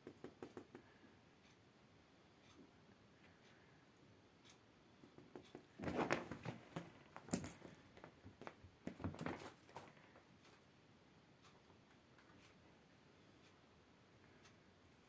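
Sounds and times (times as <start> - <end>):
light rustling and scratching: 5.6 - 10.6.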